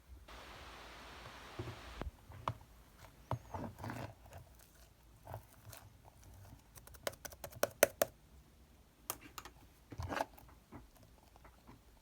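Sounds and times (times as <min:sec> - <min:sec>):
faint recording hiss: 0:00.0 - 0:12.0.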